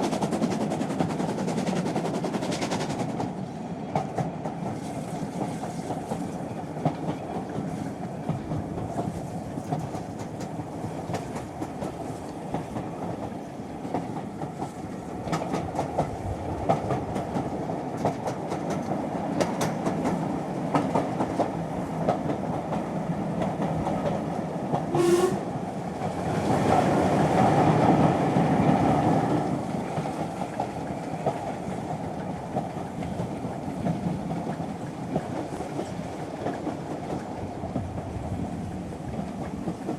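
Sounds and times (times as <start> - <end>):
train rumbling: 0.0 - 39.9
wheels clicking over rail joints: 6.8 - 25.5.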